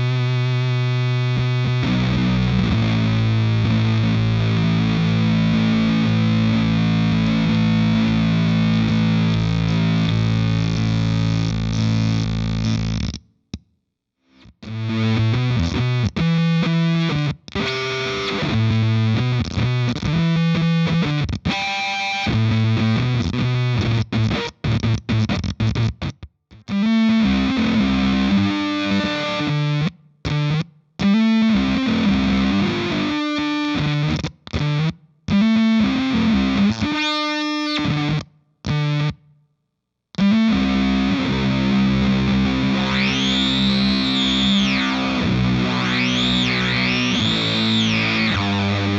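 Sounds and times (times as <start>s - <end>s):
distorted fuzz electric guitar: 0.0s - 13.2s, 14.6s - 26.0s, 26.6s - 39.2s, 40.2s - 48.9s.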